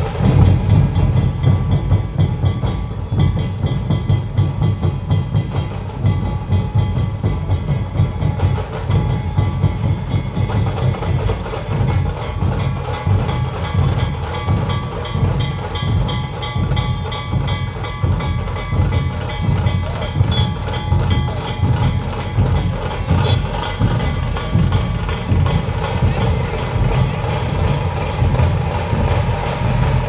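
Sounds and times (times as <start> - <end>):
fast drumming: 0.0 - 30.0.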